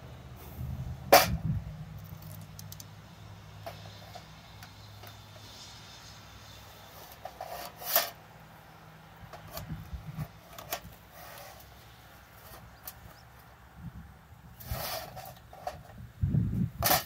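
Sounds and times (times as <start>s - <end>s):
objects scraping and knocking: 3.6s - 8.2s, 9.3s - 13.2s, 14.6s - 16.0s.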